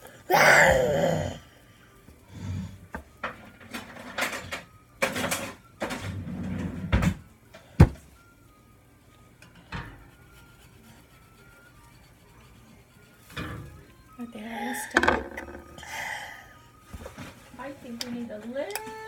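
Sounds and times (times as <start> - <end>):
faint background music: 0.0 - 19.0
kitchen rustles and knocks: 3.0 - 8.1, 14.9 - 15.8.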